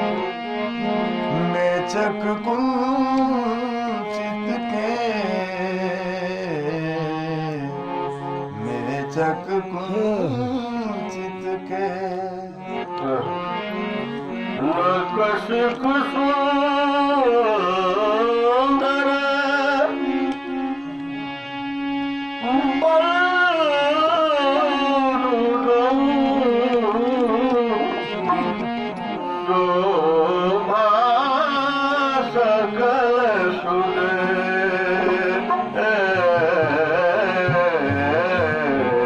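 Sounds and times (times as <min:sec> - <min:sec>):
tabla: 0:00.0 - 0:39.0
devotional singing: 0:29.3 - 0:39.0.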